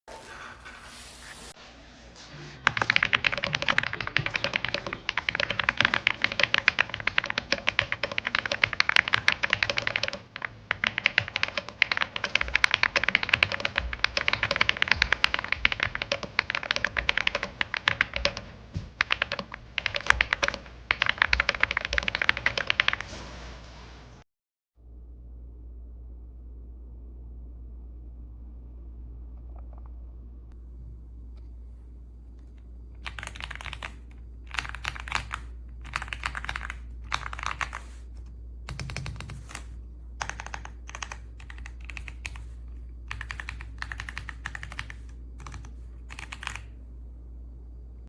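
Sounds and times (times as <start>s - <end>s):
mechanical keyboard key clacks: 33.0s - 38.0s.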